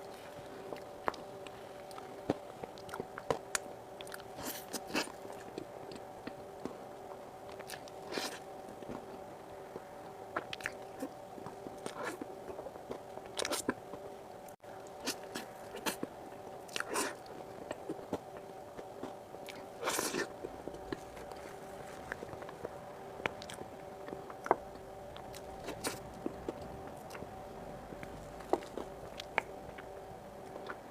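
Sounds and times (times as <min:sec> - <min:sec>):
faint steady hum: 0:00.0 - 0:30.9
wet mouth clicks and chewing: 0:00.6 - 0:06.8, 0:10.3 - 0:14.0, 0:16.7 - 0:27.3.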